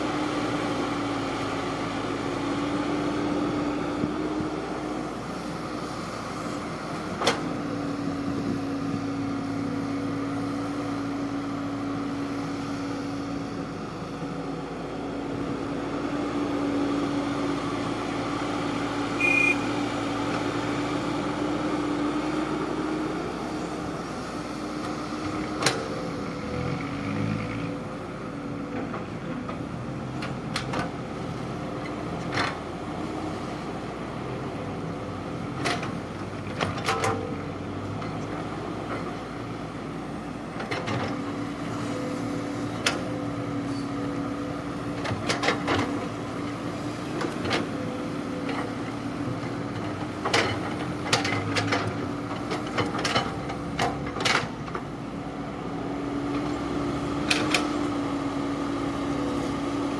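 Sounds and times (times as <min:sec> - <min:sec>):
engine droning: 0:00.0 - 0:59.9.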